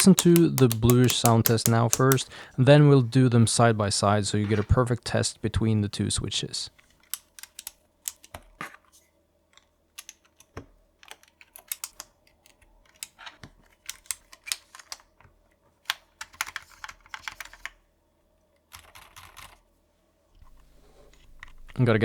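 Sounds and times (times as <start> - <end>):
soft mechanical keyboard typing: 0.0 - 2.3, 16.2 - 17.8, 18.7 - 19.6.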